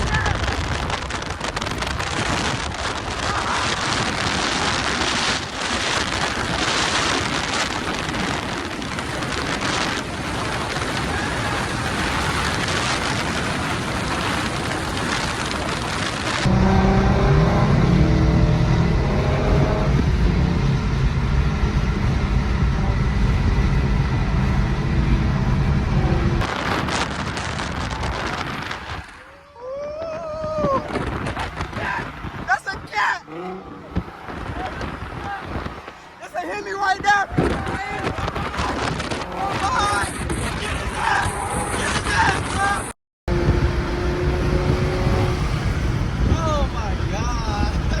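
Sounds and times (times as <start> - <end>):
wind on microphone: 0.0 - 48.0
deep car exhaust rumble: 0.1 - 28.8, 43.3 - 48.0.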